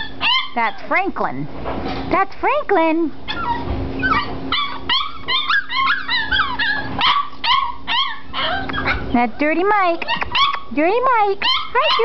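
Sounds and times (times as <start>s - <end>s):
puppies whining and yipping: 0.0s - 0.9s, 3.2s - 10.7s, 11.3s - 12.0s.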